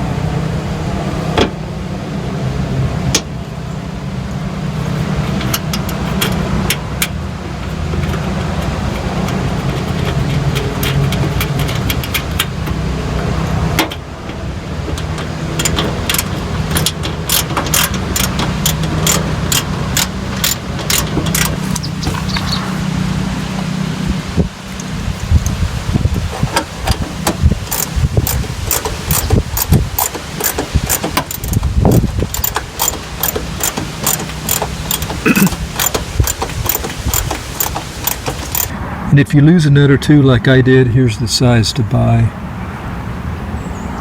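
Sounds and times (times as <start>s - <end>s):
socket wrench clicking: 15.0s - 22.6s, 26.5s - 38.7s.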